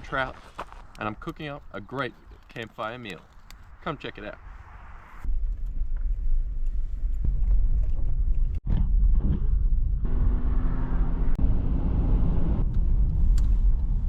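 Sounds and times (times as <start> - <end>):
car road and engine rumble: 8.3 - 14.0.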